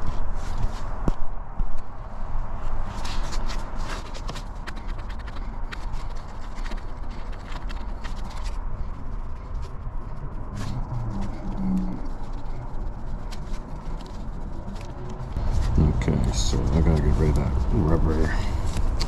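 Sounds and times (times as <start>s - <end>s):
low rumble: 8.8s - 19.0s.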